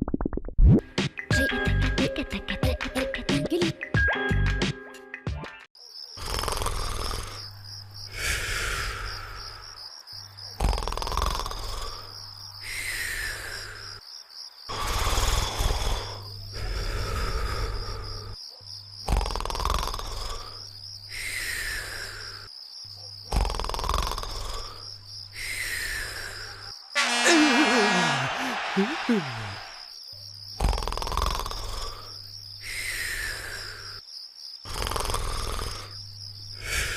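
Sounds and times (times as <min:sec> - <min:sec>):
crickets chirping: 0:05.8 - 0:36.9
cartoon snoring: 0:06.2 - 0:07.5, 0:10.6 - 0:13.9, 0:14.7 - 0:18.4, 0:19.0 - 0:20.6, 0:23.3 - 0:24.8, 0:25.6 - 0:29.9, 0:30.6 - 0:32.1, 0:34.6 - 0:36.0, 0:36.6 - 0:36.9.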